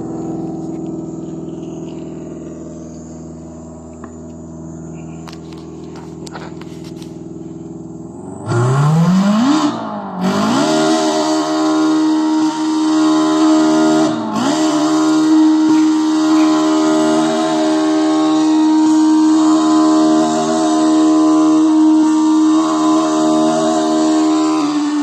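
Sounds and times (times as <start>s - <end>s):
engine revving: 0.0s - 25.0s.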